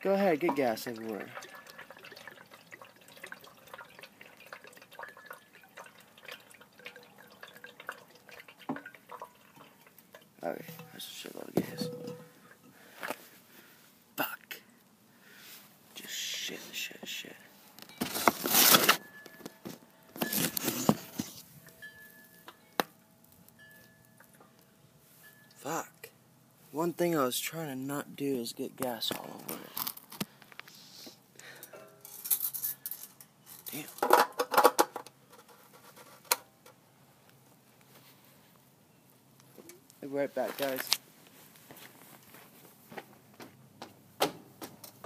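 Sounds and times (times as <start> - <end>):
gasoline pouring into tank: 0.2 - 12.5
rustling handling noise: 10.4 - 14.0, 17.5 - 22.8, 39.4 - 43.6.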